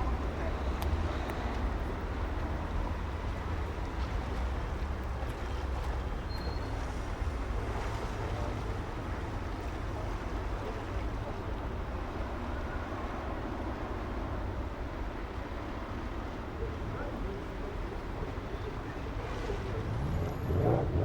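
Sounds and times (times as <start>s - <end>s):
passing traffic rumble: 18.3s - 21.0s.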